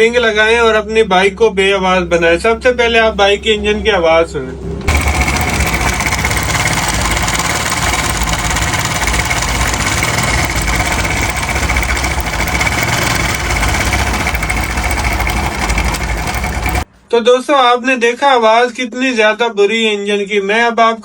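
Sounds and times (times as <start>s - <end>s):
loud mechanical rattle: 4.6s - 16.9s
motorcycle engine idling: 4.9s - 16.8s.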